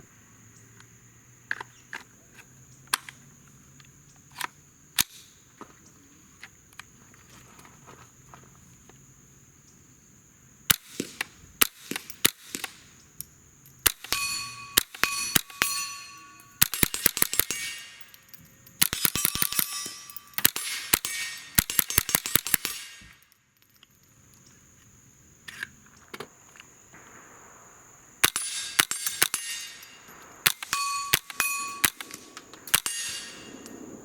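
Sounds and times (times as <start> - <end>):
suppressed rifle shots: 13.9 - 17.9, 18.8 - 23.1, 26.9 - 34.0.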